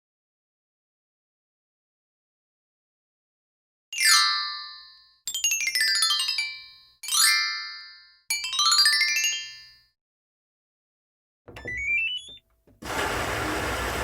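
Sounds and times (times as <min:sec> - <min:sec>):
sparkle chime effects: 0:04.0 - 0:09.9.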